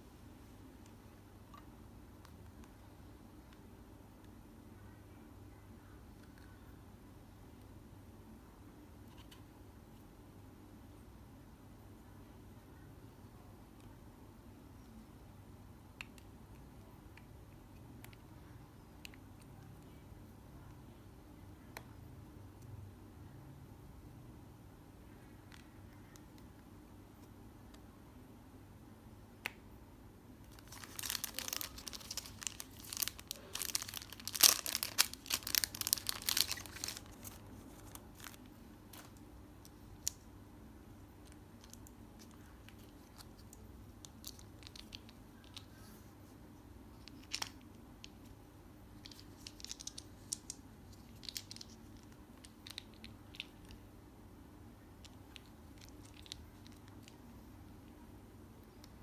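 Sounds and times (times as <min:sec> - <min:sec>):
packaging torn and crinkled: 0:30.5 - 0:39.2, 0:49.0 - 0:51.8.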